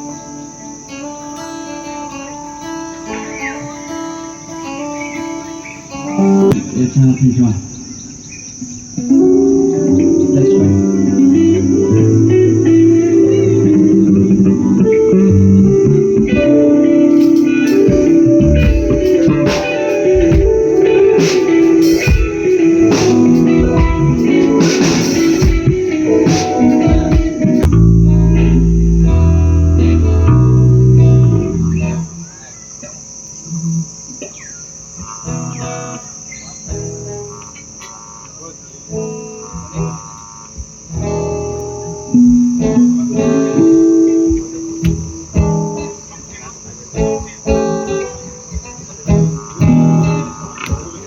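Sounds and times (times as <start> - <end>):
guitar playing sustained notes: 0.0 - 51.0
high-pitched insect-like trill: 0.0 - 51.0
drum hits: 17.2 - 30.5.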